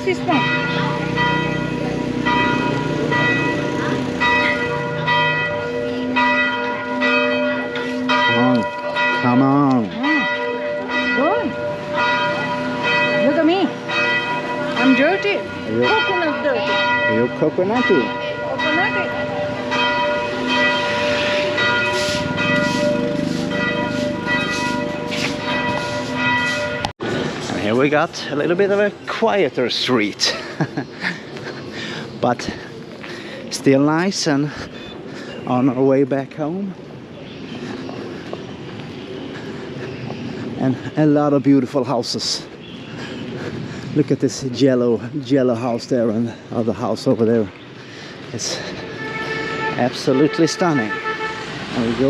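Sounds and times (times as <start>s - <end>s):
church bell tolling: 0.0s - 26.9s.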